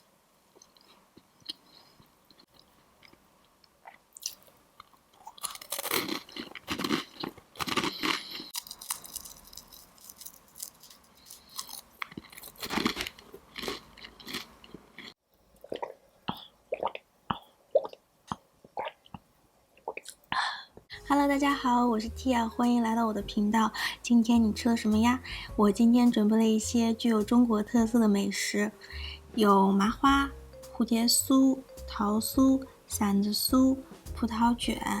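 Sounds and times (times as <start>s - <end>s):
crunchy pastry chewing: 3.8s - 15.9s.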